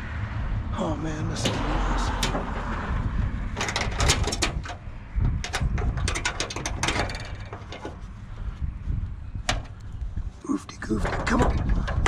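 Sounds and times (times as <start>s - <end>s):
scrap metal clanking and rattling: 1.4s - 8.6s, 9.4s - 9.8s, 10.8s - 12.0s.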